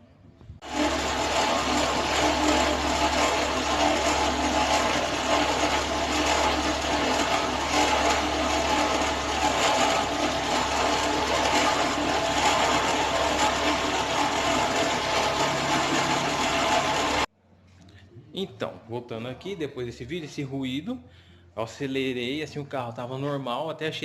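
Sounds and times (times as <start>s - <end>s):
engine mechanical clatter: 0.6s - 17.3s.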